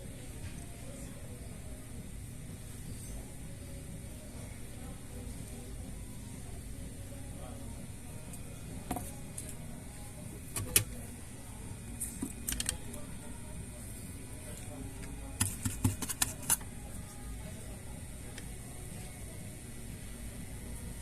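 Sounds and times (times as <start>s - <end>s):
steady low hum: 0.0s - 21.0s
small tools clicking and tapping: 15.4s - 16.7s.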